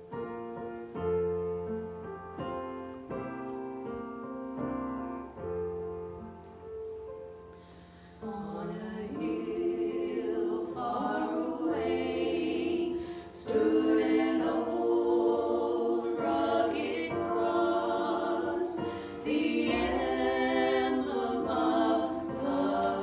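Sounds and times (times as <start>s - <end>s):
group singing a hymn: 8.2s - 23.0s.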